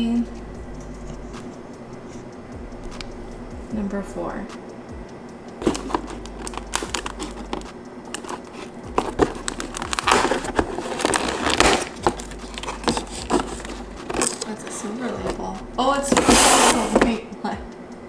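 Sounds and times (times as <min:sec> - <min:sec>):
cardboard packaging crinkling: 0:05.6 - 0:15.5, 0:16.1 - 0:17.2.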